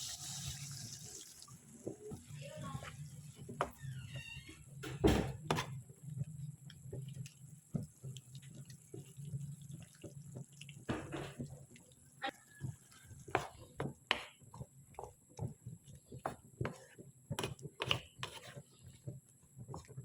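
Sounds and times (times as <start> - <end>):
water dripping and splashing: 0.0 - 3.4, 6.7 - 13.8.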